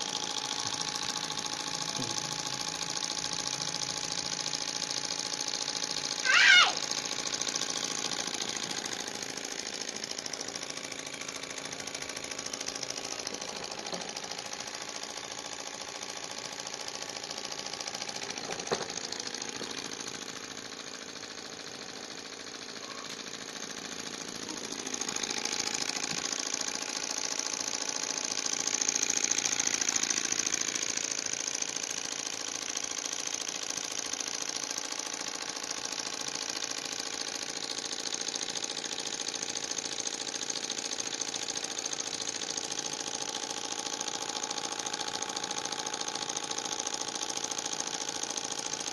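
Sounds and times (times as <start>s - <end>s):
model stirling engine whirring: 0.0s - 48.9s.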